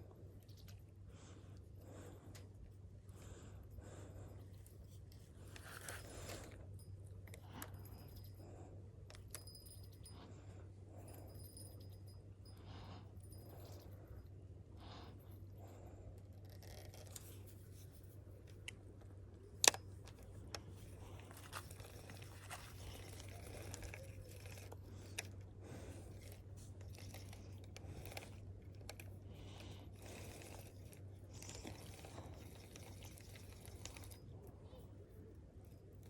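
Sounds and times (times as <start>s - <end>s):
faint low hum: 0.0s - 36.0s
small clicks of handling: 16.2s - 34.3s.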